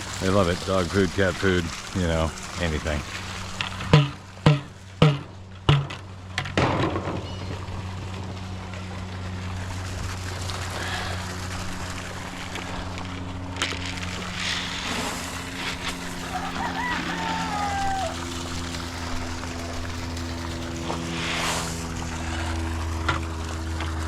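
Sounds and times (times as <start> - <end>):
low hum with faint hiss: 0.0 - 24.0.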